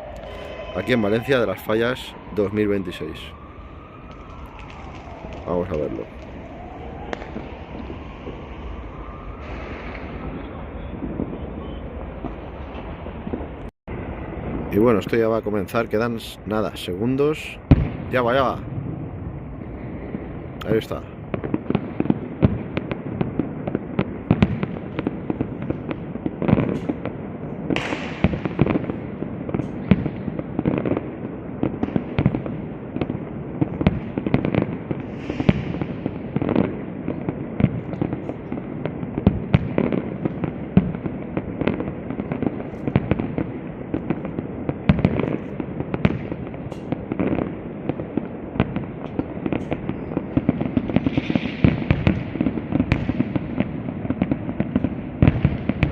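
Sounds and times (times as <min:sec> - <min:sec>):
fireworks bangs: 0:00.0 - 0:55.9
fireworks hissing streaks: 0:35.0 - 0:35.9.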